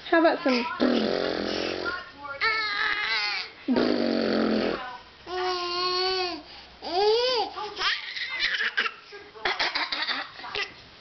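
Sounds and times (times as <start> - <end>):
toddler babbling: 2.4 - 3.5, 5.3 - 8.9.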